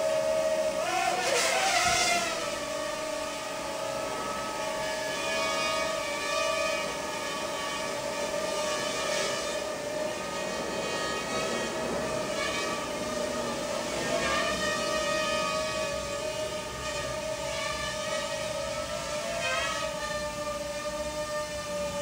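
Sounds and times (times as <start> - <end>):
minidrone propellers whining: 0.0 - 22.0.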